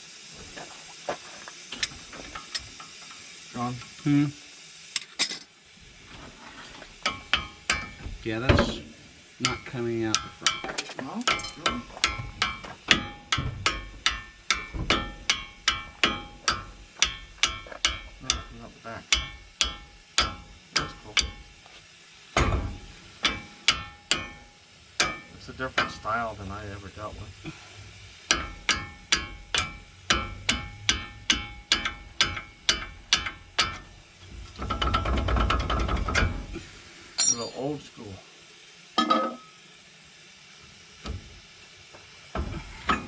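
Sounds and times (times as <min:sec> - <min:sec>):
rapid metallic rattling: 0:06.9 - 0:21.6, 0:22.4 - 0:36.6
hammer blows on metal: 0:07.0 - 0:21.6, 0:27.5 - 0:34.0.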